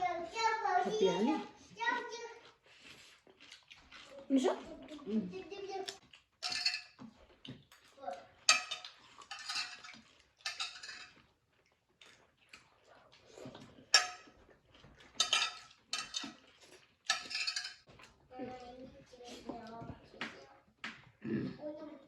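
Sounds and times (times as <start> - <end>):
spoons clinking on plates: 6.4 - 7.1, 8.4 - 11.2, 13.9 - 14.4, 15.2 - 17.9.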